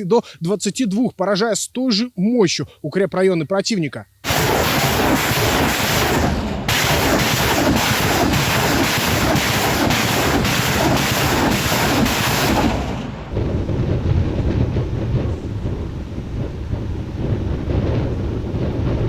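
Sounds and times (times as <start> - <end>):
roar of rockets launching: 4.2 - 19.0
low rumble: 4.5 - 19.0
wind on microphone: 12.4 - 19.0.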